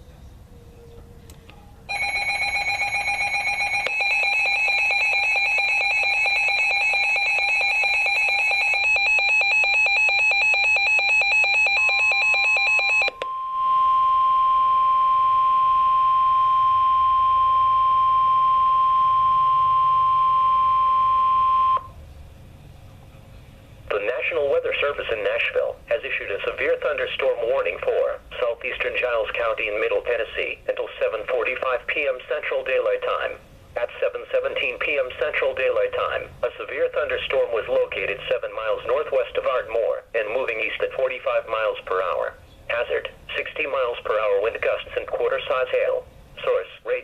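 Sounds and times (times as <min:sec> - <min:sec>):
fast-pulsing electronic alarm: 0:01.9 - 0:21.9
steady warning alarm tone: 0:01.9 - 0:22.0.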